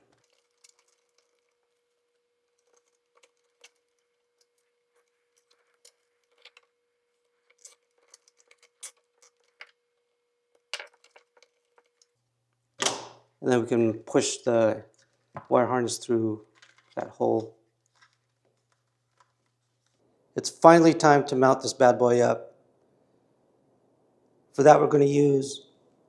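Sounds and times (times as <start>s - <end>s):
wiring harness clicks and rustles: 0.0s - 6.7s, 7.4s - 9.8s, 16.4s - 20.0s
faint steady hum: 0.0s - 26.0s.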